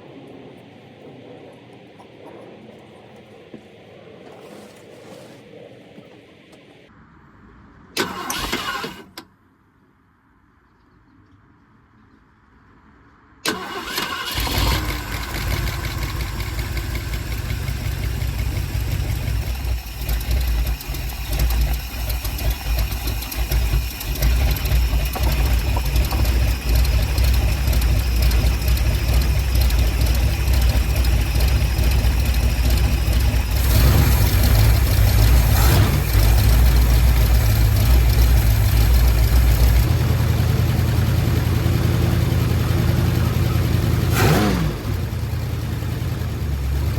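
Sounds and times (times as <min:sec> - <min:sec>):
engine idling: 0:13.4 - 0:46.9.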